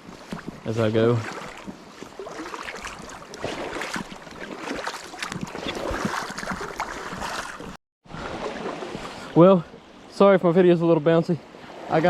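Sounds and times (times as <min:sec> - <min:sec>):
water splashing around wading legs: 0:00.0 - 0:09.1.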